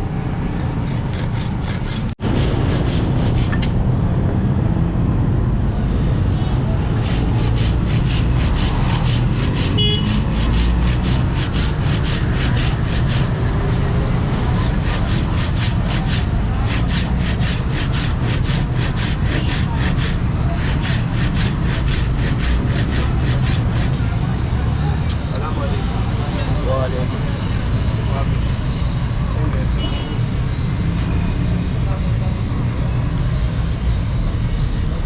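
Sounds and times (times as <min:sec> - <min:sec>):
abrasive strokes on steel blade: 0:00.4 - 0:03.9, 0:06.8 - 0:24.2.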